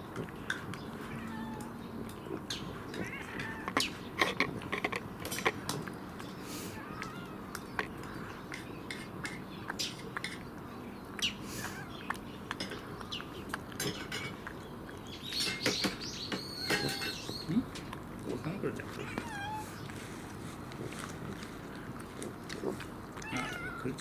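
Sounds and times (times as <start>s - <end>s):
cat chirping calls: 1.0s - 1.8s, 6.6s - 8.2s, 11.2s - 12.2s, 15.4s - 17.6s, 18.9s - 20.3s, 23.2s - 24.0s
food clicking in dishes: 12.0s - 14.6s, 15.2s - 18.4s.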